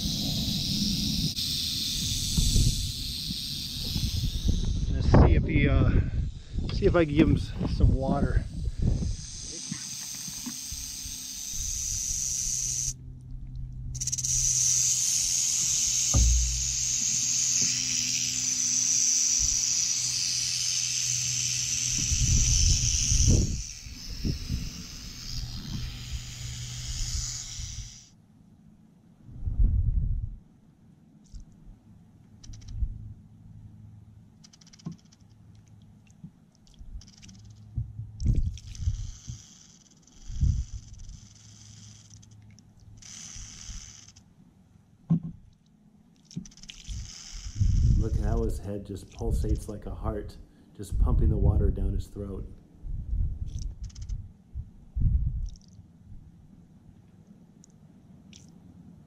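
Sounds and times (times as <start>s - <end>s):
wind rumble on microphone: 0.0s - 1.4s, 2.0s - 9.6s, 21.9s - 27.9s, 29.2s - 30.5s, 32.5s - 33.2s, 37.7s - 39.4s, 40.2s - 41.3s, 46.8s - 56.5s
rattlesnake rattle buzzing: 0.0s - 13.0s, 13.9s - 28.2s, 32.4s - 32.8s, 34.4s - 35.4s, 36.6s - 44.3s, 46.2s - 49.8s, 53.5s - 54.3s
loud low thump: 16.0s - 17.0s.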